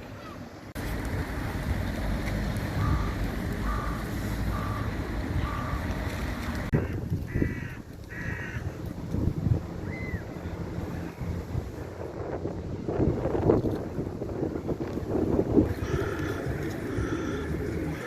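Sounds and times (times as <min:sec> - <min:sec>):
wind rumbling on microphone: 0:00.7 - 0:18.0
crows cawing: 0:02.8 - 0:05.8, 0:06.8 - 0:08.7, 0:15.8 - 0:18.0.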